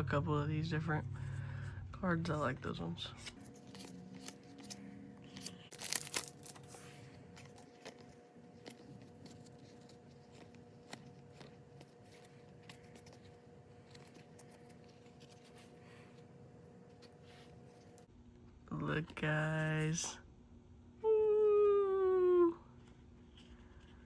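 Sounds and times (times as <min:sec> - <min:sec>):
faint steady hum: 0:00.0 - 0:24.0
cards crinkling and tearing: 0:03.2 - 0:16.2.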